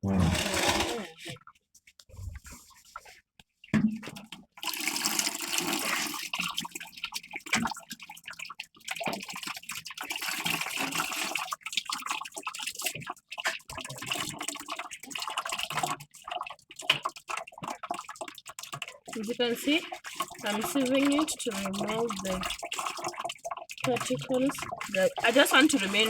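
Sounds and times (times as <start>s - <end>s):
juice pouring through a sieve: 0.0s - 1.2s, 4.6s - 26.0s.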